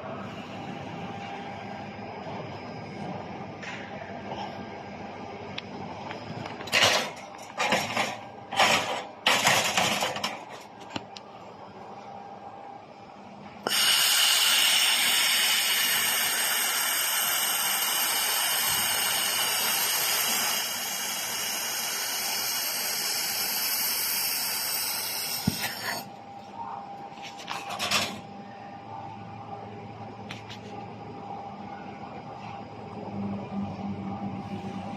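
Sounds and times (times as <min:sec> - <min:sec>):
welding gas hiss: 0:13.6 - 0:26.0.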